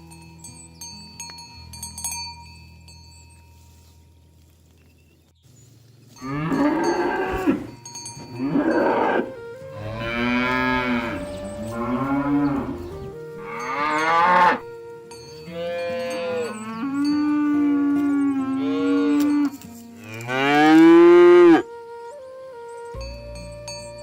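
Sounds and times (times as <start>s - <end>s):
cattle mooing: 6.2s - 14.7s, 15.5s - 21.6s.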